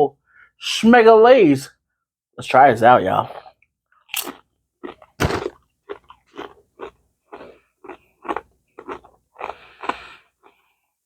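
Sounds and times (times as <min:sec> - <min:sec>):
potato chips crunching: 0:04.1 - 0:10.6.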